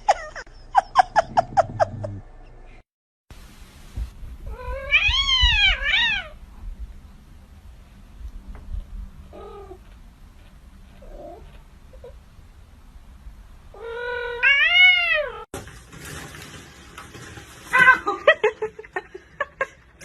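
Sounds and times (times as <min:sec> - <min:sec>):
cat meowing: 0:04.5 - 0:06.4, 0:13.8 - 0:15.4.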